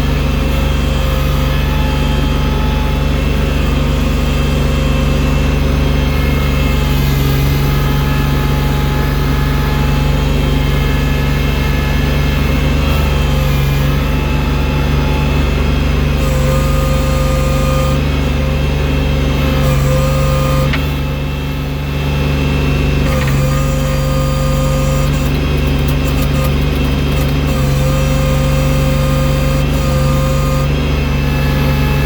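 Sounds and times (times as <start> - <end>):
loader engine running: 0.0 - 32.0
mechanical whine: 0.0 - 32.0.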